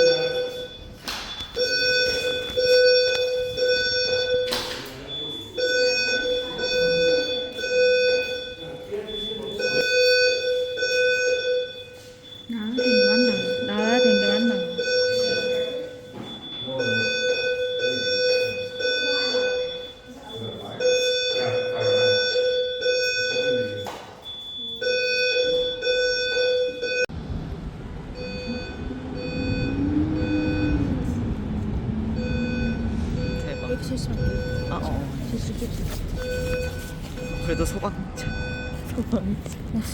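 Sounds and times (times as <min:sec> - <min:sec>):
fire alarm buzzing: 0:00.0 - 0:27.4, 0:28.0 - 0:39.9
low rumble: 0:27.1 - 0:39.9.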